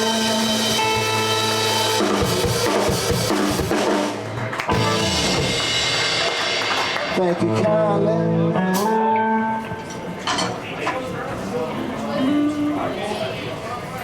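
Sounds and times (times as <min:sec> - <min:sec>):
drum kit hits: 0:00.0 - 0:07.7
blues band playing: 0:00.0 - 0:10.8, 0:11.7 - 0:13.1.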